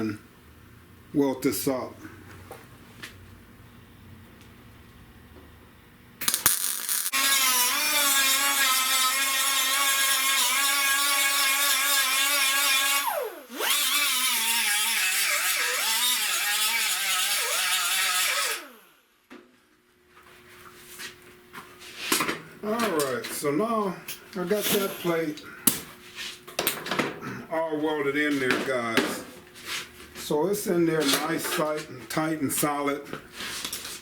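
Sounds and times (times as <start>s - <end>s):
power tool motor whining: 6.3s - 19.0s.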